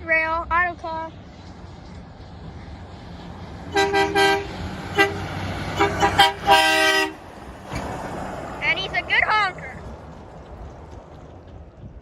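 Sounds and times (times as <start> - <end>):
truck engine rumbling: 0.0 - 12.0
truck air horn toots: 3.7 - 7.3.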